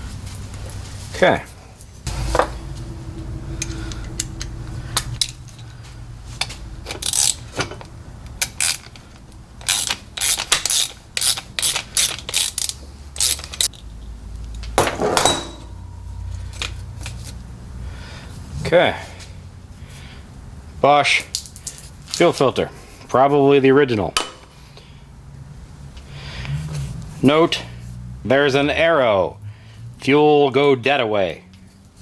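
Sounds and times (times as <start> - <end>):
low steady hum: 0.0 - 28.8
hand tools clicking against metal: 6.4 - 13.9.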